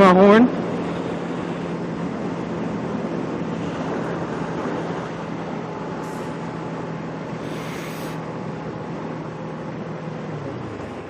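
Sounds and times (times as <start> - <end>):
rush of wind noise: 0.6 - 9.2.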